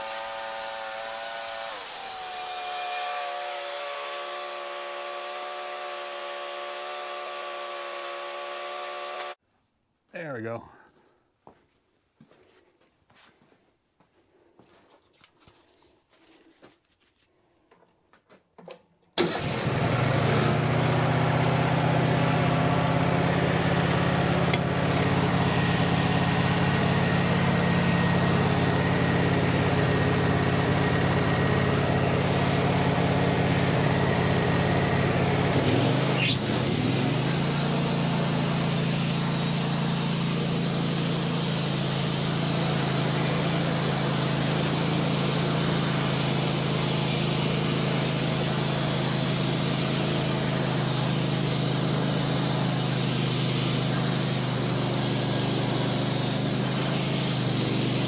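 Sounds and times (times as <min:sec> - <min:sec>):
sawmill engine running: 0:00.0 - 0:09.4, 0:19.2 - 0:58.0.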